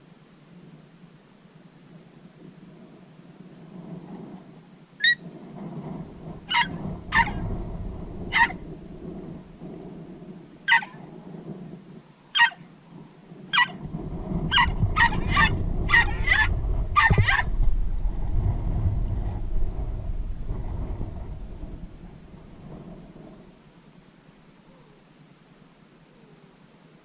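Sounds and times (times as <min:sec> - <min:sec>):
dog yipping: 0:05.0 - 0:05.6, 0:06.5 - 0:07.4, 0:08.3 - 0:08.6, 0:10.7 - 0:11.0, 0:12.4 - 0:12.6, 0:13.5 - 0:13.8, 0:14.5 - 0:17.5
low rumbling noise: 0:05.2 - 0:12.0, 0:13.7 - 0:24.5.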